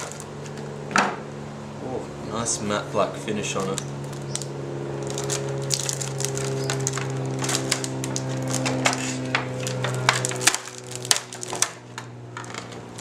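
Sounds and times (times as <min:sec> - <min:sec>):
plastic packaging crackling: 0:00.0 - 0:00.6, 0:03.5 - 0:13.0
steady low hum: 0:00.0 - 0:13.0.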